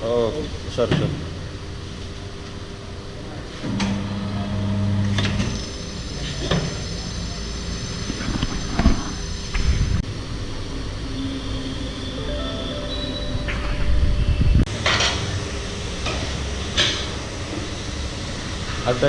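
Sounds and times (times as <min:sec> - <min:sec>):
machine hum: 0:00.0 - 0:19.0
high steady whine: 0:03.2 - 0:19.0.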